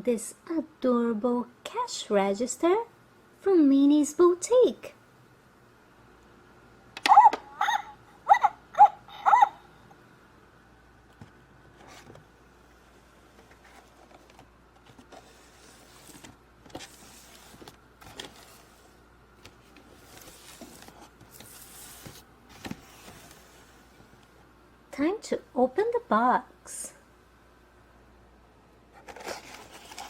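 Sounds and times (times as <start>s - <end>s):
soft rustles of cardboard: 11.2s - 24.3s.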